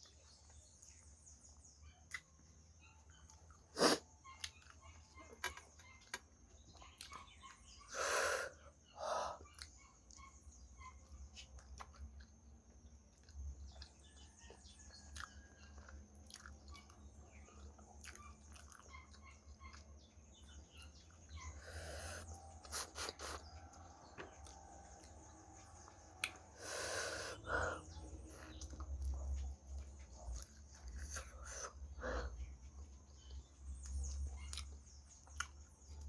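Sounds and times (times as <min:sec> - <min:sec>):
person chewing food: 0:00.0 - 0:36.0
breathy sounds: 0:26.5 - 0:28.6, 0:31.0 - 0:32.5.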